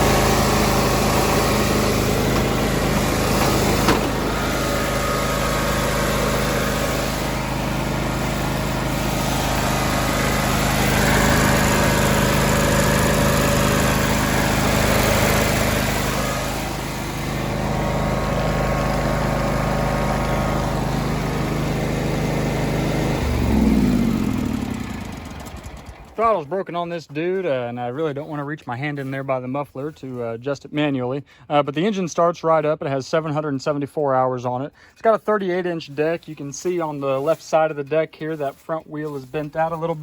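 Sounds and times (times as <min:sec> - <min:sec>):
riding lawn mower engine: 0:00.0 - 0:26.5, 0:36.0 - 0:40.0.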